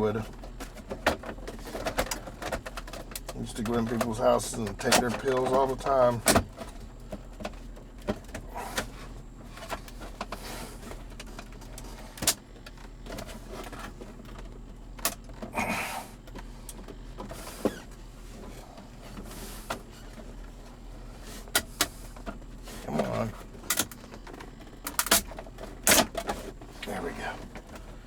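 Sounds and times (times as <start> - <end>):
plastic trim scraping: 21.4 - 28.0.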